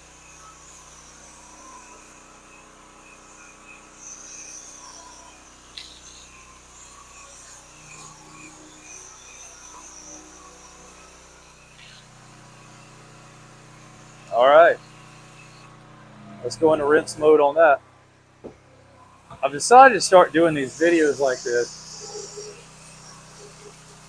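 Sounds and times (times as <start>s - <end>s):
low machine hum: 4.7s - 24.0s
pressure washer spray hissing: 19.3s - 24.0s.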